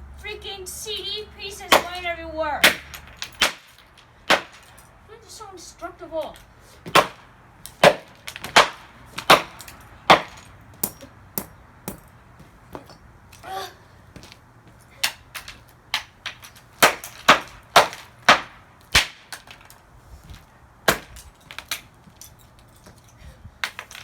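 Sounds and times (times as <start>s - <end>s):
blows cracking plastic case: 15.0s - 19.7s.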